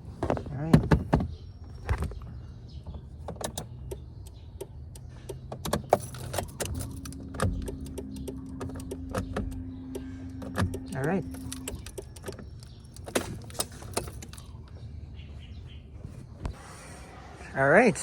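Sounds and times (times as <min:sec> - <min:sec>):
tools clicking and rattling: 0:05.4 - 0:14.6.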